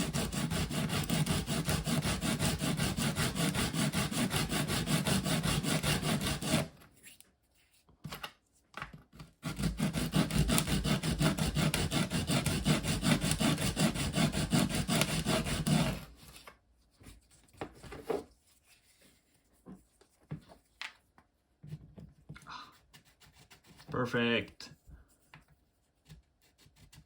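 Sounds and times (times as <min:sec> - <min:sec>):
plastic part rubbed on sandpaper: 0:22.8 - 0:24.2.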